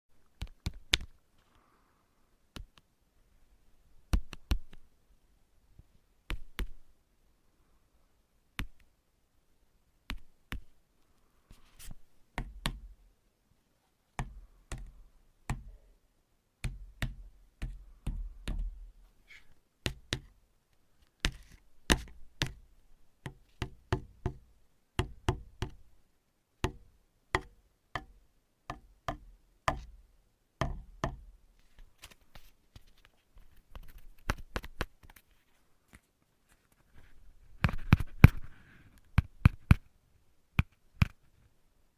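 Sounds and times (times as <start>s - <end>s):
tapping on hard surface: 27.4s - 29.9s, 30.6s - 31.2s.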